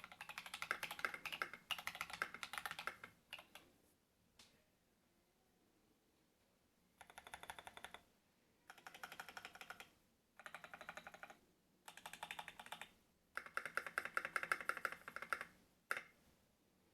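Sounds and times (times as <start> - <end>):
mechanical keyboard typing: 0.0 - 3.6, 7.0 - 8.0, 8.7 - 16.1.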